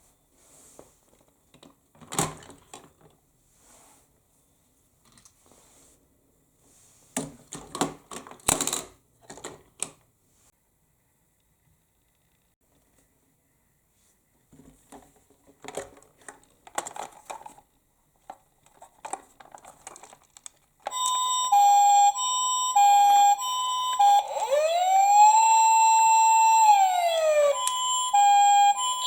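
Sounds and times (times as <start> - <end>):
plastic clicks and rattles: 7.2 - 10.1, 14.6 - 21.0
toy electronic siren: 20.9 - 29.0.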